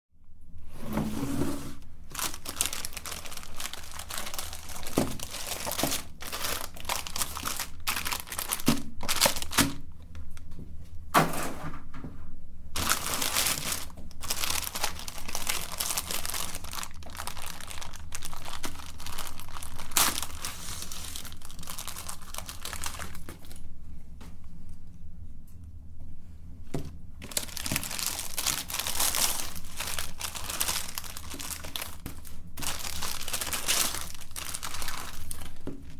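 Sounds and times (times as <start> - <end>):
ice cream crunching and cracking: 2.1 - 10.3, 12.8 - 23.6, 27.2 - 35.9.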